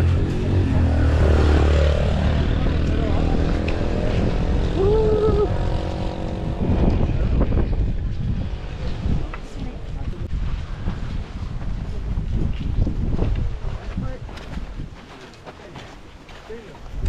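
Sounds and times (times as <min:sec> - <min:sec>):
vehicle engine humming: 0:00.0 - 0:10.9
road rumble: 0:00.0 - 0:17.0.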